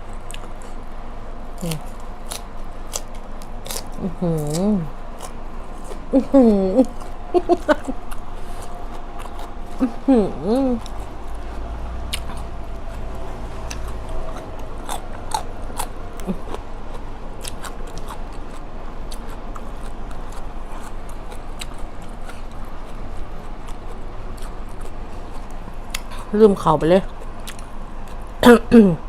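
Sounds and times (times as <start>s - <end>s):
steady low hum: 0.0s - 29.0s
chewing and mouth smacks: 6.8s - 10.0s, 10.8s - 26.3s, 27.1s - 28.4s.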